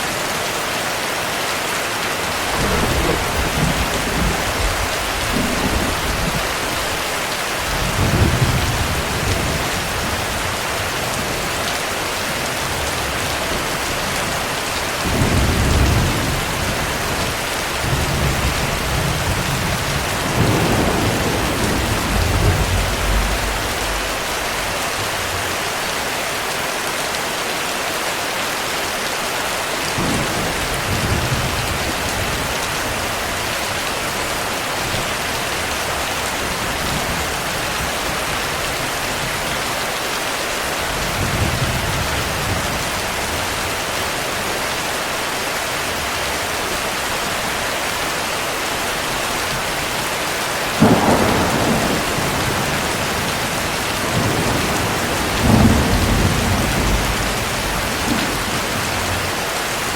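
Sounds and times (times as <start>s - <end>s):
heavy rain: 0.0s - 59.9s
thunder rumbling: 2.2s - 11.4s, 15.0s - 25.5s, 50.8s - 59.9s
sharp thunderclap: 2.4s - 7.0s, 17.9s - 24.8s, 50.8s - 59.2s.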